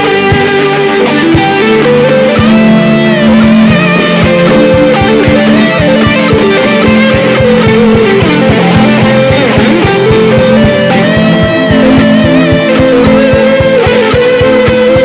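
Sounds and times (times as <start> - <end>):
instrumental worship music: 0.0 - 15.0.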